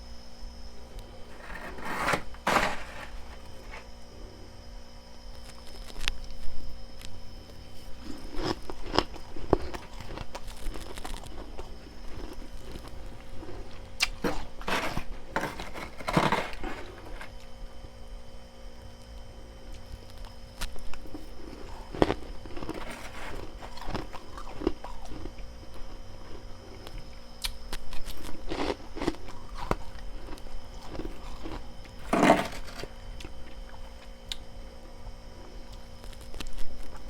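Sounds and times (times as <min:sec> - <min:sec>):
person crunching ice: 0:01.3 - 0:03.8, 0:08.0 - 0:17.3, 0:21.4 - 0:25.2, 0:28.5 - 0:33.3.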